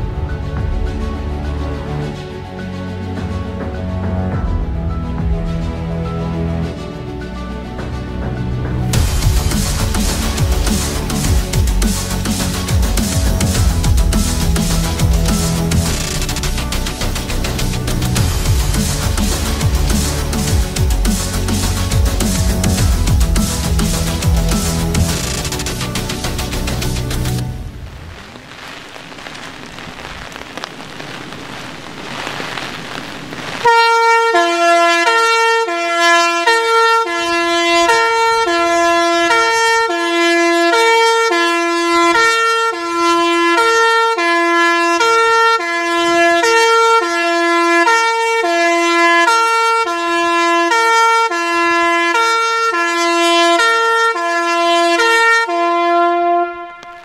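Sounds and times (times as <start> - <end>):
rain: 8.9 - 35.2, 56.6 - 57.0
wind: 25.1 - 48.5
two-tone fire siren: 33.3 - 57.0.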